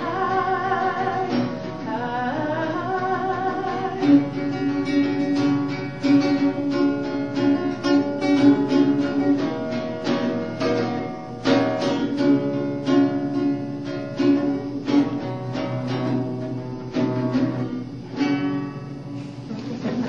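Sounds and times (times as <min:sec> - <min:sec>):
guitar chords strummed: 0:00.0 - 0:19.8.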